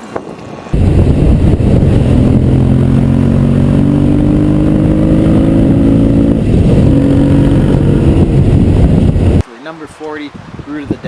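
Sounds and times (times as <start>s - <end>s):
motorcycle engine accelerating: 0.8s - 9.4s.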